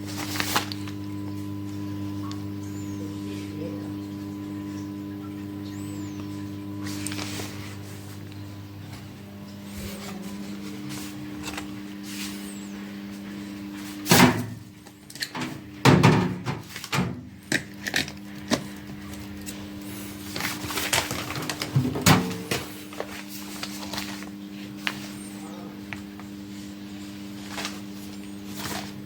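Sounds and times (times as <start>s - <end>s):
microwave oven humming: 0.0s - 29.0s
loud clunk: 14.1s - 14.6s, 15.4s - 17.2s.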